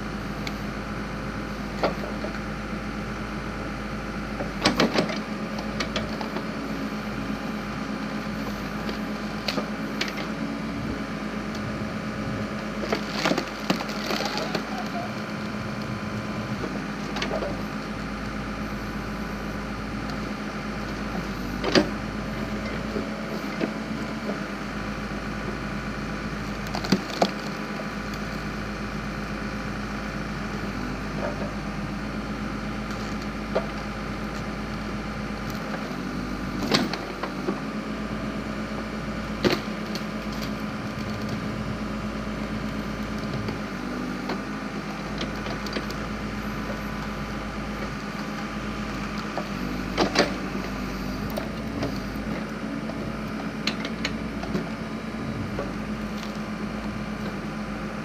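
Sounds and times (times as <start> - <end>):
backhoe engine running: 0.0 - 58.0
firewood cracking as it splits: 12.5 - 17.8, 26.4 - 28.4.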